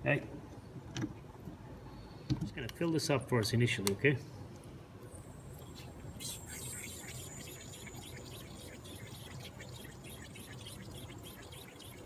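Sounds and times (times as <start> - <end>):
thin high whistle: 5.1 - 12.0
refrigerant hissing from can: 5.6 - 12.0.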